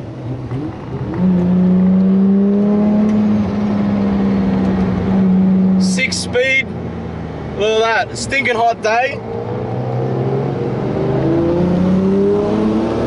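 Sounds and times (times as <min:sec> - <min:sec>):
car engine pulling under load: 0:00.2 - 0:05.9.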